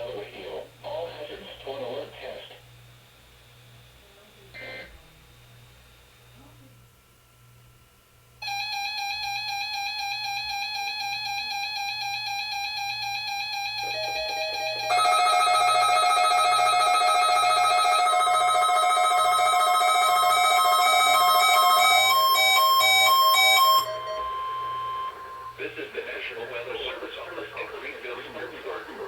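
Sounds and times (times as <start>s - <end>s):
electronic music tones: 13.4s - 25.6s.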